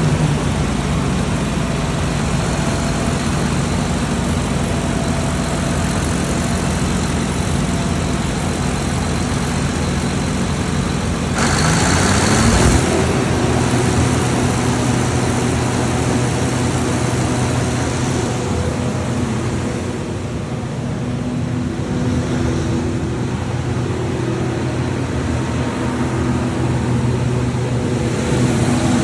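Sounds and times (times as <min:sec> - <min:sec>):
generator engine running: 0:00.0 - 0:29.0.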